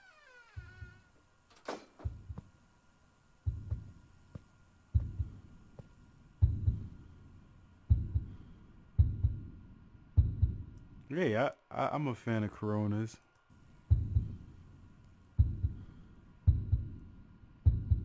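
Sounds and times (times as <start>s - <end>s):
heartbeat low double thump: 2.0s - 2.5s, 3.5s - 4.4s, 5.0s - 7.0s, 7.9s - 8.4s, 9.0s - 9.6s, 10.2s - 10.7s, 13.9s - 14.4s, 15.4s - 15.9s, 16.5s - 17.0s, 17.6s - 18.0s.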